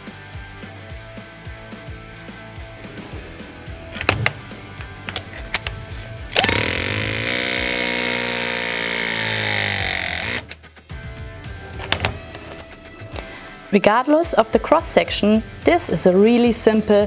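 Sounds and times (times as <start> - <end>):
crimping tool motor whine: 2.8 - 10.6
sharp tool clicks: 3.9 - 10.6.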